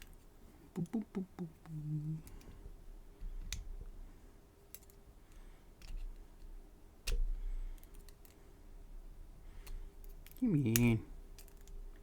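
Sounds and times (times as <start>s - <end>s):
small clicks of lock tools: 4.7s - 8.4s, 9.6s - 12.0s.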